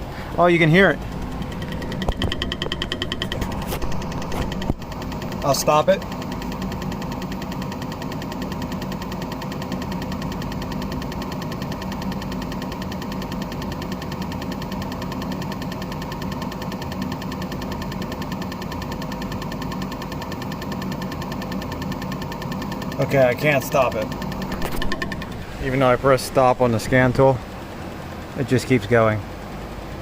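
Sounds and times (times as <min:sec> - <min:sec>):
solenoid valve clicking rapidly: 0:00.4 - 0:29.6.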